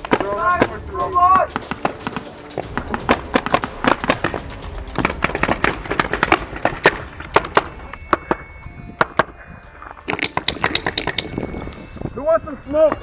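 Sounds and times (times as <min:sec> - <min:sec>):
paintball markers firing: 0:10.1 - 0:11.3.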